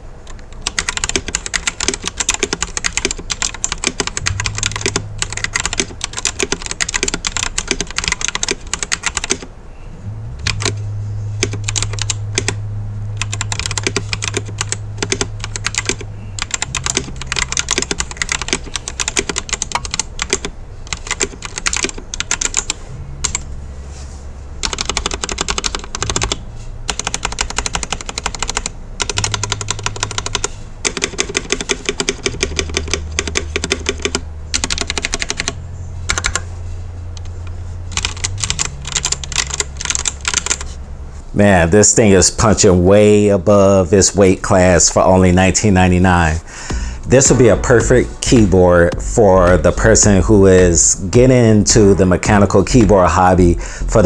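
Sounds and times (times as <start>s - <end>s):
low steady hum: 0.0s - 54.0s
rapid mechanical keyboard typing: 0.2s - 9.5s, 10.4s - 10.8s, 11.4s - 12.6s, 13.2s - 23.4s, 24.6s - 36.5s, 37.2s - 40.8s.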